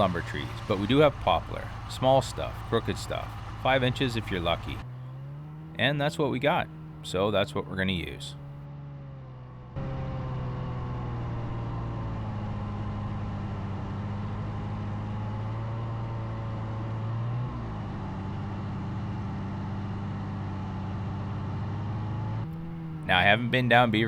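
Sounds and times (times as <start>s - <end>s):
snowmobile engine running: 0.0s - 8.6s, 22.5s - 24.0s.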